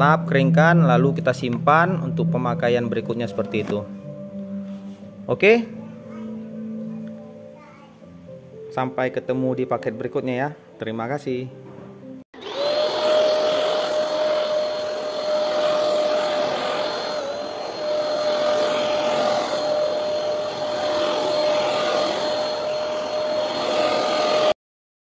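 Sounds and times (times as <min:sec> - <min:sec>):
vacuum cleaner motor whine: 0:12.4 - 0:24.6.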